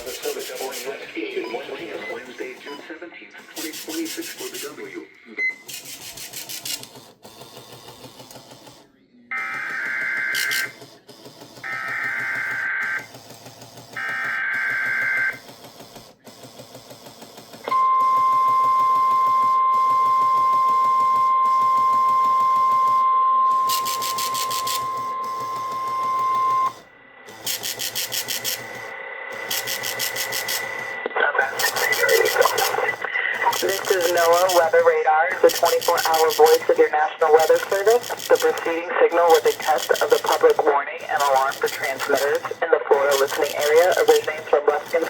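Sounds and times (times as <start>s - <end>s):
steady high alarm beep: 17.7s - 45.0s
buzzing digital data bursts: 23.6s - 26.7s, 27.4s - 28.8s, 29.4s - 30.8s, 31.5s - 45.0s.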